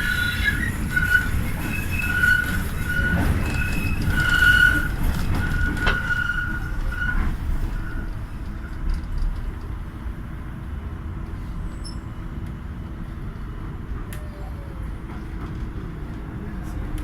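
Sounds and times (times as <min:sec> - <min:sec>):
high wheel squeal: 0:00.0 - 0:08.2
train rumbling on track: 0:00.0 - 0:17.0.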